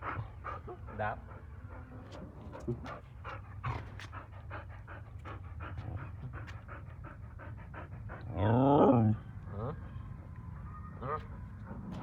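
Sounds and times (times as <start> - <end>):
dog panting rapidly: 0.0 - 8.3.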